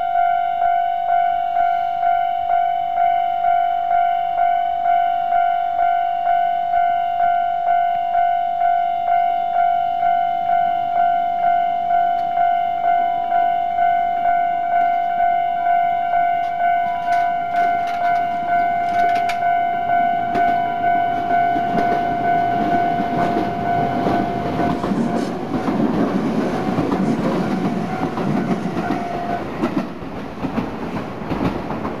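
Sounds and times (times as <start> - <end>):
level-crossing electronic bell: 0.0 - 29.4
train wheels clacking on rails: 16.4 - 19.6, 20.2 - 32.0.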